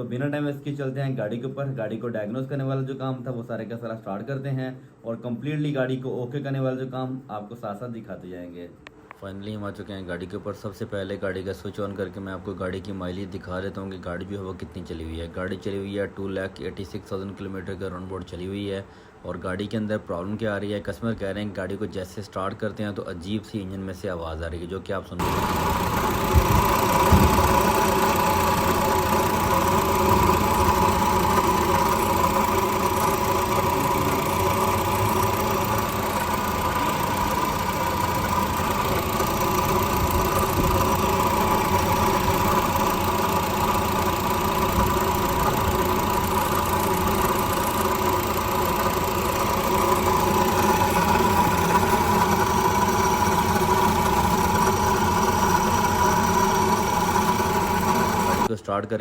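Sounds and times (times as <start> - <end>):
car engine idling: 25.2 - 58.5
constant bearing whine: 25.2 - 58.5.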